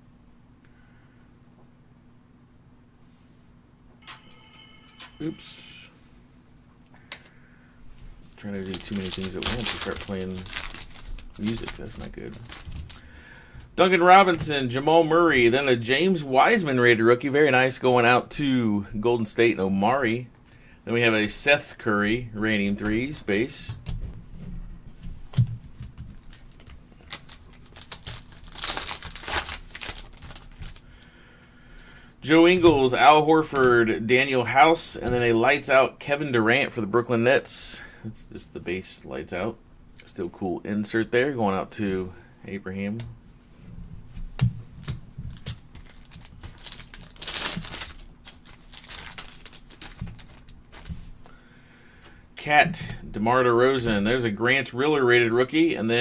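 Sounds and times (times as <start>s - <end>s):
wrapper crinkling and tearing: 8.3s - 13.1s, 26.2s - 30.8s, 44.8s - 51.0s.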